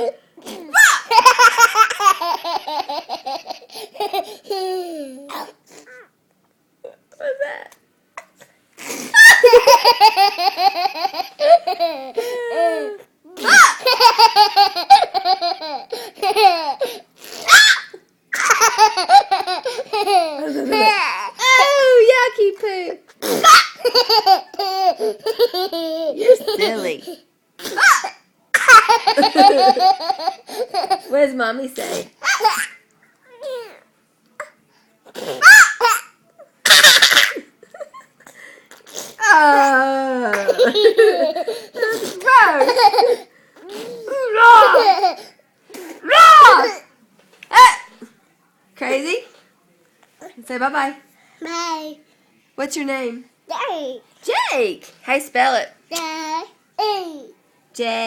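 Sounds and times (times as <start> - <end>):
toddler laughing: 0.0 - 5.3, 9.2 - 21.8, 23.2 - 26.9, 40.3 - 45.3
toddler squealing: 17.3 - 18.0.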